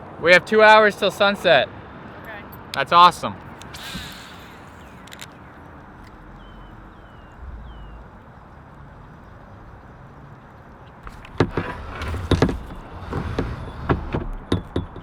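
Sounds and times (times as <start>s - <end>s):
quiet low rumble: 5.5s - 15.0s
knocks and clatter on kayak: 10.9s - 15.0s.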